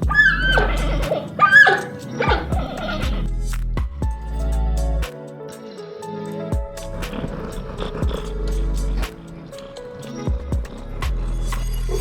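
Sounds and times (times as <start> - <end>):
animal swooping gliding cries: 0.0 - 3.3
background music: 0.0 - 12.0.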